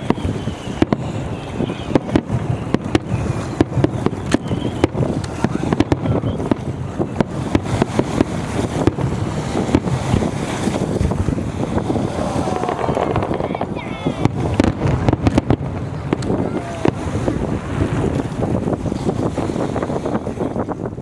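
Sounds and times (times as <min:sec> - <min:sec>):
fireworks popping and crackling: 0:00.0 - 0:21.0
wind buffeting microphone: 0:00.0 - 0:21.0.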